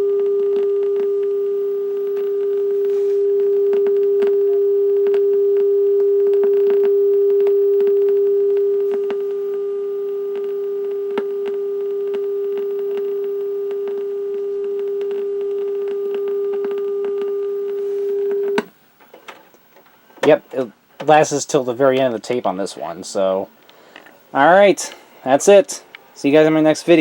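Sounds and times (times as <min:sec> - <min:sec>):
steady low-pitched tone: 0:00.0 - 0:18.6
crackling tape noise clicks: 0:00.0 - 0:22.6.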